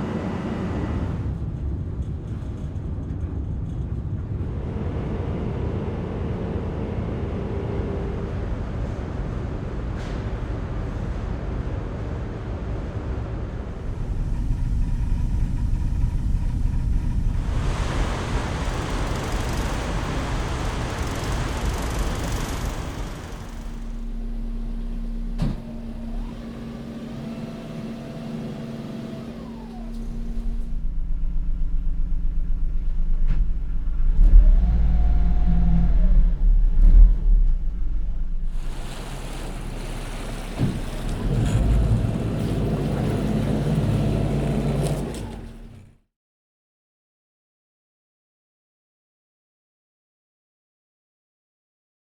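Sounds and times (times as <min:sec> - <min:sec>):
low engine rumble: 0:00.0 - 0:46.0
throbbing engine rumble: 0:00.0 - 0:46.0
machinery whine: 0:04.3 - 0:11.2, 0:12.1 - 0:45.9
even rushing noise: 0:16.9 - 0:24.1.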